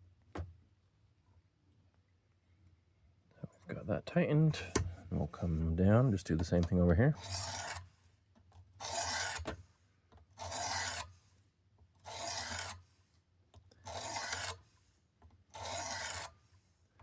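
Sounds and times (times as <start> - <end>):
sharpening stone on knife blade: 7.2 - 7.9, 8.8 - 9.4, 10.4 - 11.1, 12.1 - 12.8, 13.9 - 14.6, 15.6 - 16.3.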